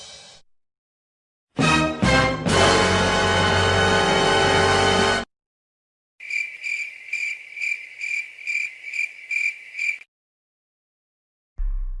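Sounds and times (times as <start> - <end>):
cricket chirping: 6.2 - 10.1.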